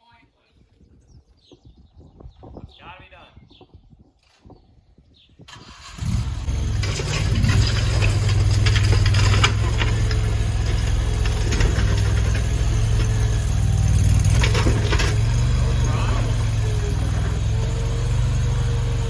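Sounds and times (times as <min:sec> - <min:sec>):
loader engine running: 0:05.6 - 0:19.0
metallic rattles and clicks: 0:06.4 - 0:17.8.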